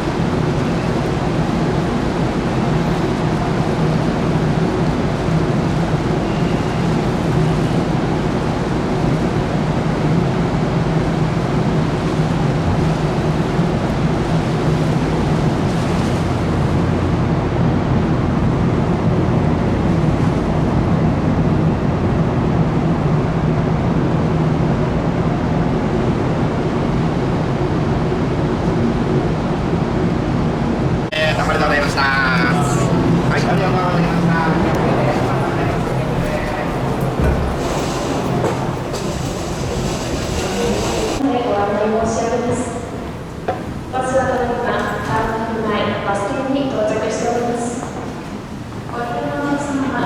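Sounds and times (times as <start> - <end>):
ferry engine hum: 0.0 - 50.0
wind: 0.0 - 50.0
sea noise: 31.1 - 44.8.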